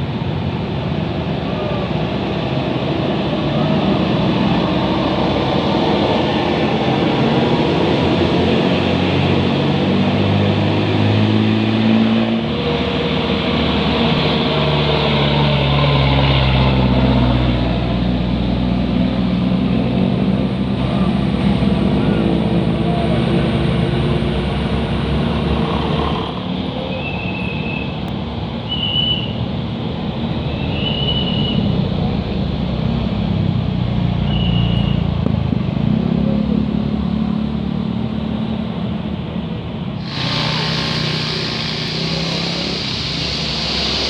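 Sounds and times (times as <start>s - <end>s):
heavy vehicle engines passing: 0.0s - 27.0s.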